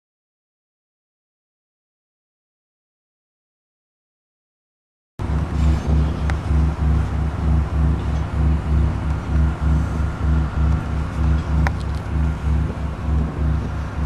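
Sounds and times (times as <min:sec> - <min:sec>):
deep low throbbing pulse: 0:05.2 - 0:14.0
clicks: 0:06.2 - 0:06.5, 0:10.6 - 0:12.2.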